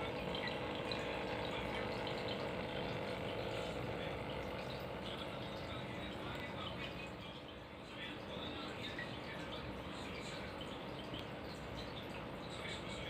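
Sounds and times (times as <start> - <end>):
faint pump hum: 0.0 - 13.0
water trickling and splashing: 0.0 - 13.0.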